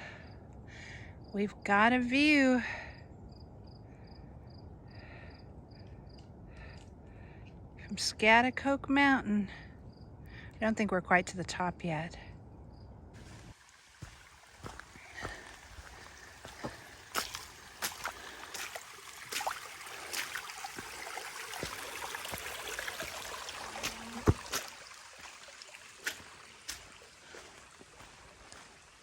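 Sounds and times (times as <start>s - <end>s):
footsteps on rocky trail: 13.2s - 29.0s.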